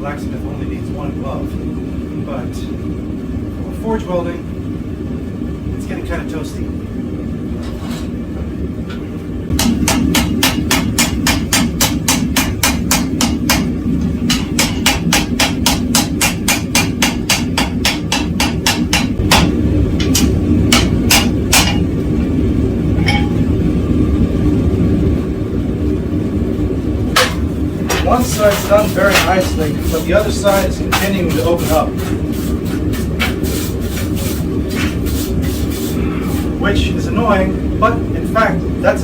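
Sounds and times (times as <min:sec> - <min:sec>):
steady low rumble: 0:00.0 - 0:39.0
hammer striking steel on anvil: 0:09.5 - 0:13.7, 0:14.3 - 0:21.9, 0:23.0 - 0:23.5, 0:27.2 - 0:29.6.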